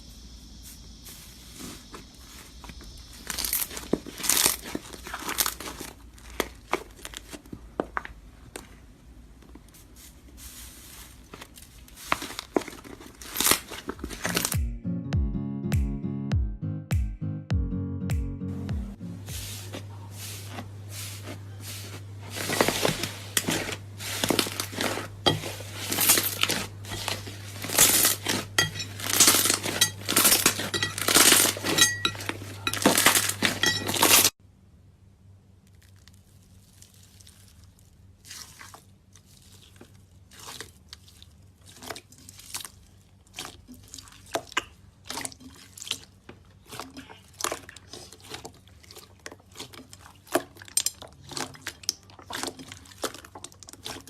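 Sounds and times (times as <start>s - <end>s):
slime squelching and popping: 3.1s - 7.8s, 35.6s - 54.0s
low steady hum: 17.4s - 54.0s.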